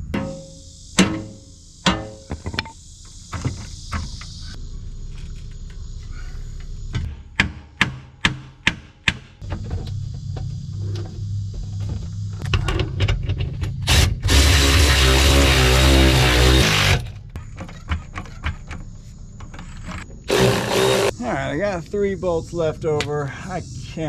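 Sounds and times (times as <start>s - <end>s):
sharp knocks on metal plate: 0.0s - 2.7s, 7.0s - 9.6s.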